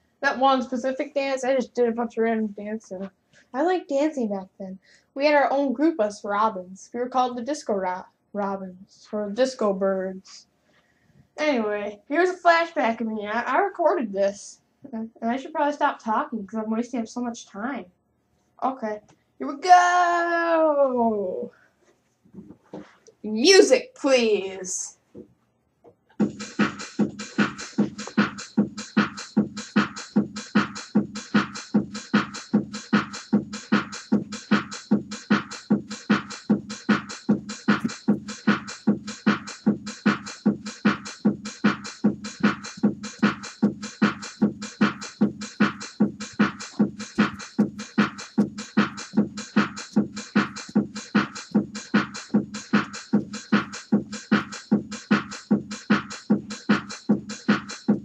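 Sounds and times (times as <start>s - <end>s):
music with steady beat: 26.2s - 58.0s.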